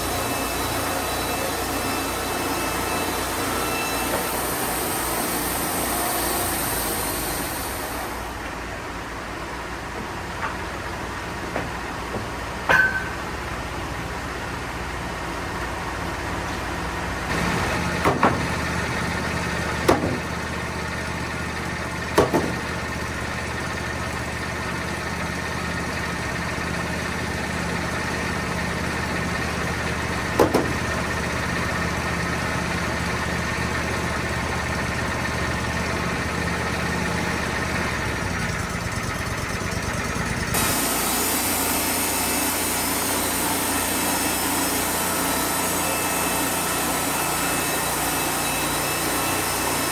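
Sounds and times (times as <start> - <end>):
portable sawmill running: 0.0 - 49.9
sharp knocks: 11.5 - 13.3, 17.3 - 18.8, 19.8 - 20.4, 22.2 - 22.8, 30.4 - 31.0.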